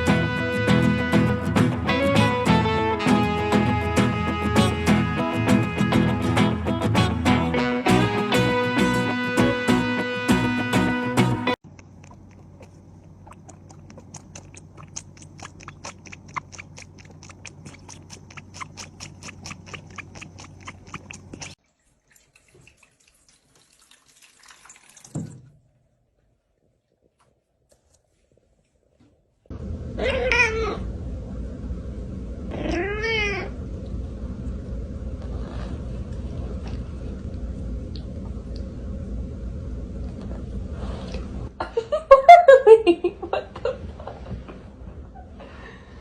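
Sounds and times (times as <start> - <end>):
cat meowing loudly: 30.0 - 30.8, 32.5 - 33.5.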